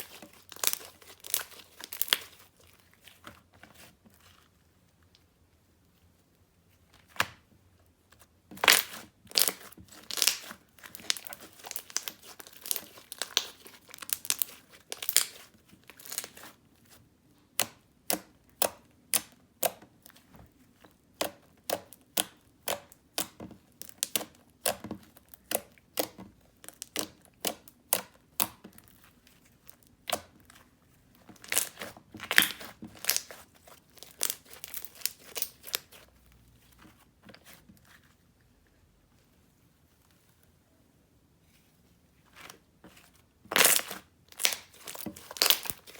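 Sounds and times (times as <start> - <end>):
sticky slime squeezed by hand: 8.6 - 16.5.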